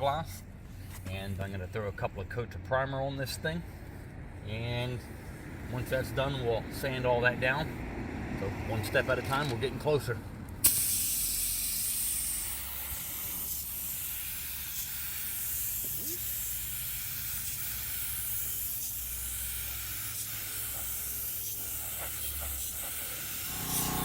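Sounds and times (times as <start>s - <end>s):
paint spray hissing: 10.6s - 24.0s
low hum: 23.4s - 24.0s.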